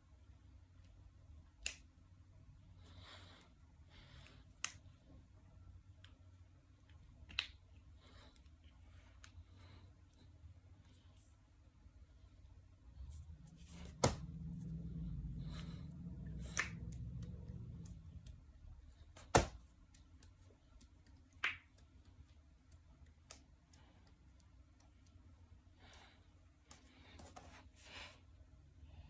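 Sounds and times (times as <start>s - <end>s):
low rumble: 12.8s - 19.1s
knuckles cracking: 16.4s - 18.4s.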